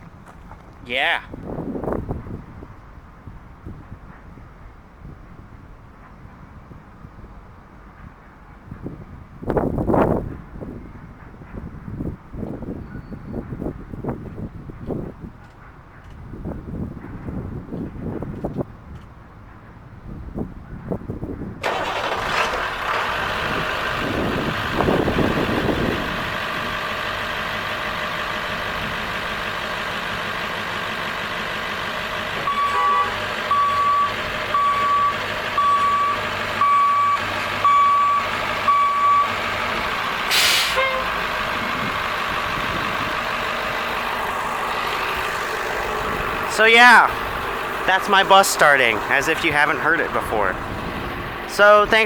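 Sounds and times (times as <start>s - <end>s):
diesel engine idling: 21.6s - 52.0s
short even beeps: 32.5s - 39.3s
brief hiss: 40.3s - 40.9s.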